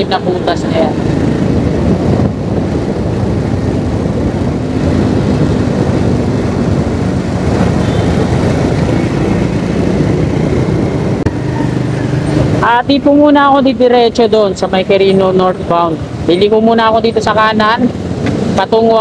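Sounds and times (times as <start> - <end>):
traffic: 0.0 - 19.0
vehicle engine hum: 0.0 - 19.0
wind rush: 0.0 - 19.0.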